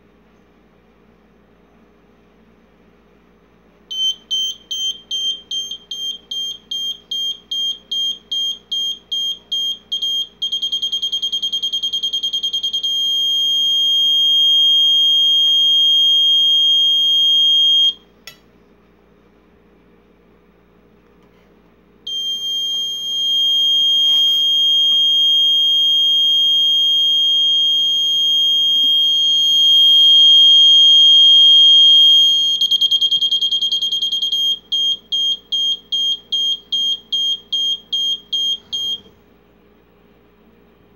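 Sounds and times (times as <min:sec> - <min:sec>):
high-pitched electronic alarm: 0:03.9 - 0:18.0, 0:22.1 - 0:39.1.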